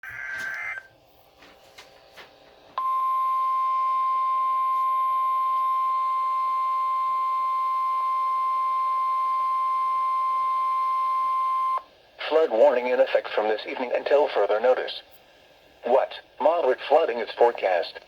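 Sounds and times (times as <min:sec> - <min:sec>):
steady warning alarm tone: 0:02.8 - 0:11.8.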